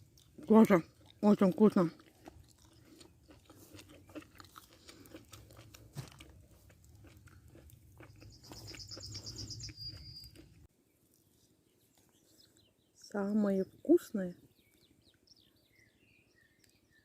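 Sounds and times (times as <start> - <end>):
person chewing food: 0.0 - 11.3
bird trilling: 8.2 - 10.5.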